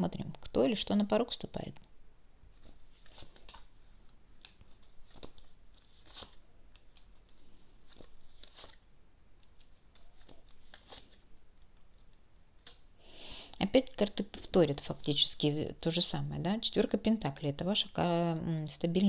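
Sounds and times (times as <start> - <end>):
cards shuffled and tapped: 4.4 - 8.8, 9.4 - 12.8.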